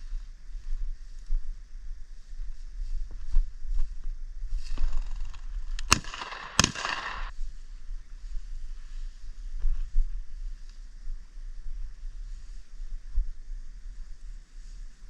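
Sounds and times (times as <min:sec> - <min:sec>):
wind rumble on microphone: 0:00.0 - 0:06.1, 0:07.2 - 0:15.0
shotgun shots with echo: 0:05.9 - 0:07.3.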